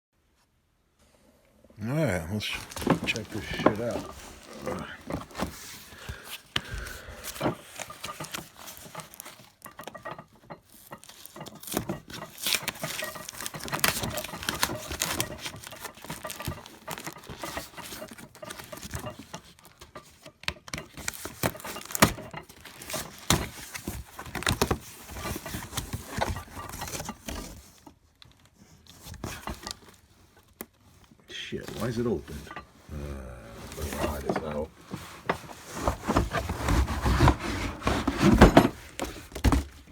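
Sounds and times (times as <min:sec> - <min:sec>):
rustling: 0:01.8 - 0:39.9
metal tools clinking: 0:02.4 - 0:06.5, 0:33.6 - 0:34.6.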